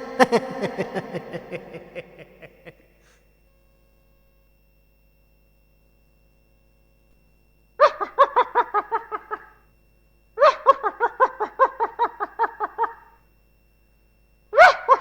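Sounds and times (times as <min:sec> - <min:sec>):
high-pitched laughter: 0:00.0 - 0:02.8, 0:07.8 - 0:09.6, 0:10.4 - 0:13.1.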